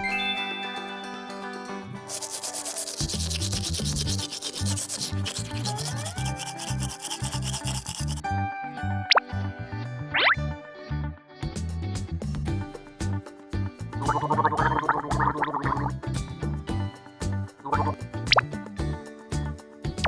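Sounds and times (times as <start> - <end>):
light background music: 0.0 - 20.0
scratchy rubbing noise: 2.1 - 8.2.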